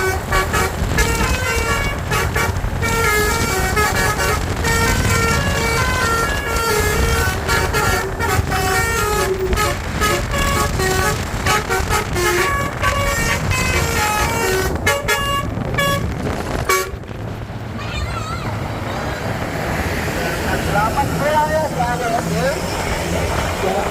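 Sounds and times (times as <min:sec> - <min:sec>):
multi-tone bus horn tune: 0:00.0 - 0:17.1.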